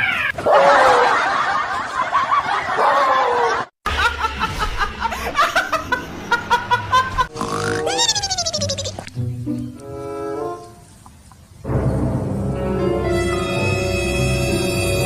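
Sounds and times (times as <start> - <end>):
people laughing: 0.8 - 7.3.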